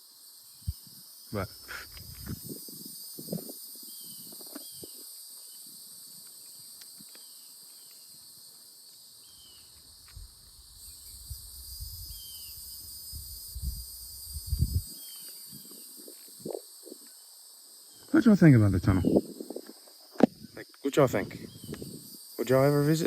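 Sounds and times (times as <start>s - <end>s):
insects chorus: 0.0s - 23.0s
wind buffeting microphone: 1.7s - 3.6s, 13.1s - 17.0s, 18.7s - 22.2s.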